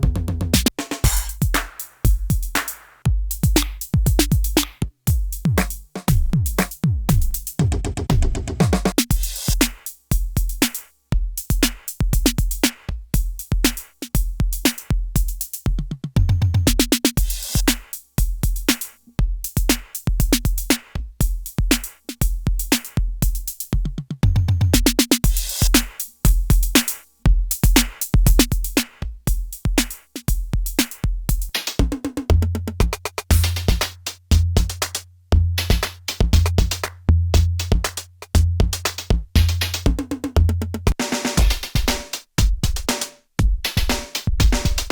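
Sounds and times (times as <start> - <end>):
drum machine beat: 0.0 - 44.9.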